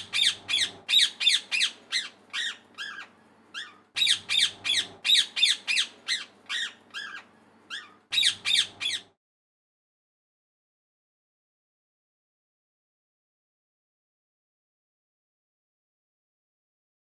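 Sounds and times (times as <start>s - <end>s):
parrot squawking: 0.0s - 9.2s.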